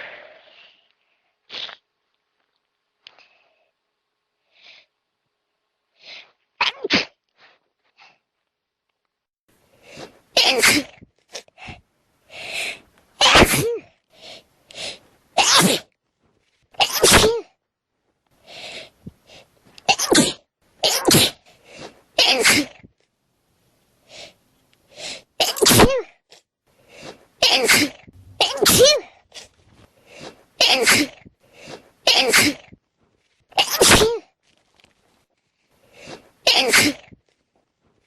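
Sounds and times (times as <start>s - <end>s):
person sneezing: 10.4s - 11.0s, 13.2s - 13.9s, 15.4s - 15.9s, 16.8s - 17.5s, 19.9s - 21.4s, 22.2s - 22.8s, 25.4s - 26.0s, 27.4s - 29.1s, 30.6s - 31.2s, 32.1s - 32.7s, 33.6s - 34.2s, 36.5s - 37.1s.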